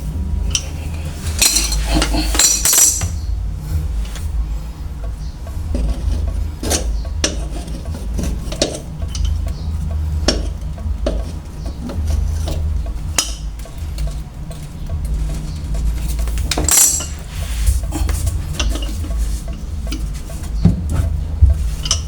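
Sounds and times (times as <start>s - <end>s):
pliers clinking and scraping metal: 1.4s - 3.2s, 16.5s - 17.2s.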